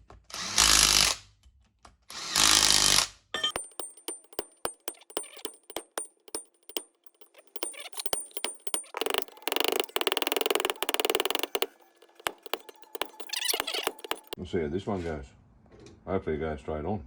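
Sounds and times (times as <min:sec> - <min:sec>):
metal tools clinking: 0:03.4 - 0:14.4
metal rattling clatter: 0:03.5 - 0:14.4.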